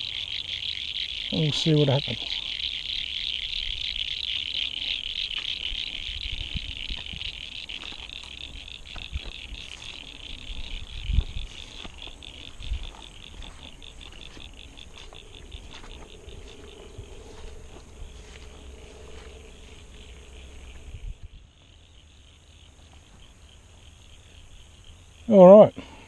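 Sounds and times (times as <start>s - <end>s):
chorus of frogs calling: 0.0s - 26.0s
low thumps: 10.5s - 21.4s.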